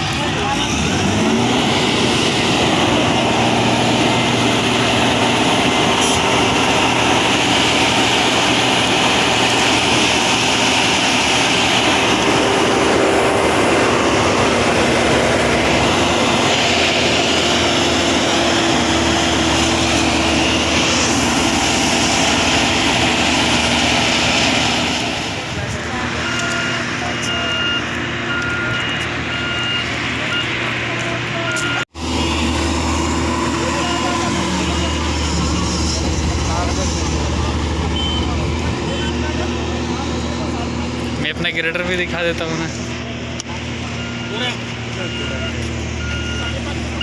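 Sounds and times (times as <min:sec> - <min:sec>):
paver diesel engine droning: 0:00.0 - 0:47.0.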